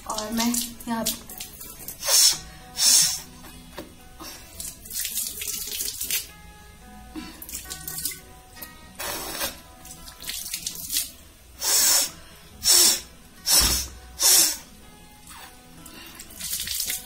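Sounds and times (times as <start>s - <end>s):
person blowing nose: 2.0s - 3.4s, 9.0s - 9.7s, 11.6s - 14.7s.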